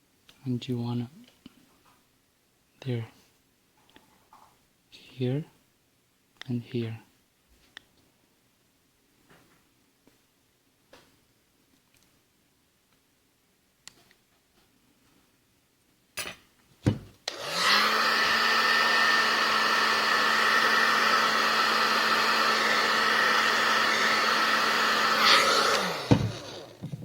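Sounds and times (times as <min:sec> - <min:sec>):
hot-air blower whining: 0:17.3 - 0:27.0.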